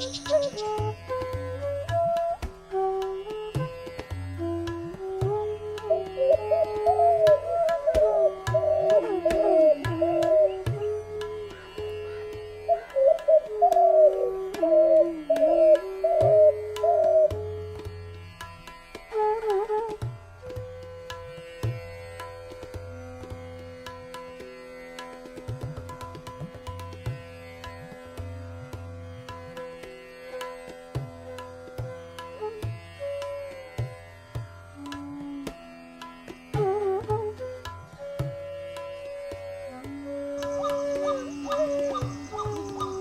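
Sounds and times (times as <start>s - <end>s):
bamboo flute long notes: 0.0s - 17.9s, 19.1s - 21.7s, 31.2s - 34.0s, 34.8s - 35.6s, 36.5s - 43.0s
tabla beat: 0.0s - 43.0s.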